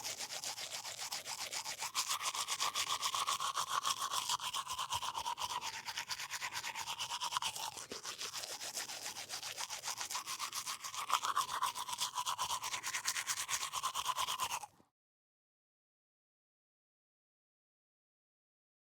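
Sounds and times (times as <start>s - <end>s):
toothbrush scrubbing teeth: 0.0s - 14.8s.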